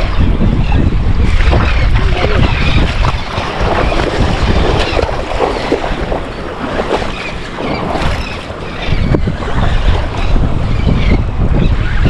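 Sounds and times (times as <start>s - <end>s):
wind buffeting microphone: 0.0s - 12.0s
waves breaking: 1.2s - 10.5s
water sloshing: 1.3s - 9.2s.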